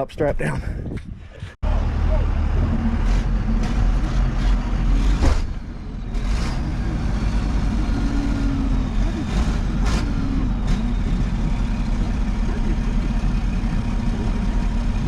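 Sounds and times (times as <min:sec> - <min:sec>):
road noise: 0:00.0 - 0:15.0
vehicle engine rumble: 0:00.0 - 0:15.0
sharp knocks and rattles: 0:02.9 - 0:06.8.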